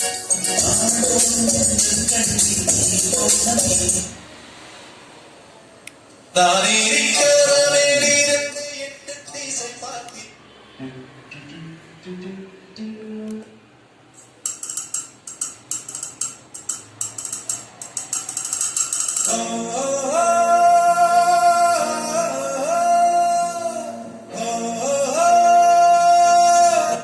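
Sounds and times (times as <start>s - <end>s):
rhythmic percussion strikes: 0.0s - 4.2s, 14.4s - 19.6s
recorded song through amplifier: 0.0s - 4.3s, 6.3s - 10.3s, 18.4s - 27.0s.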